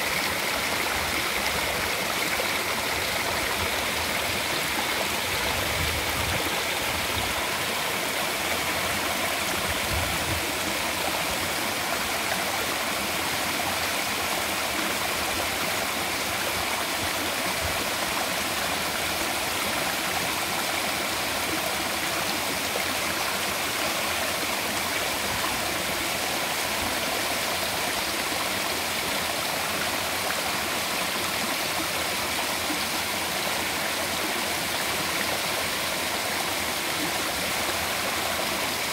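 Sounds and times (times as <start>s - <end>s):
waterfall rushing: 0.0s - 12.3s.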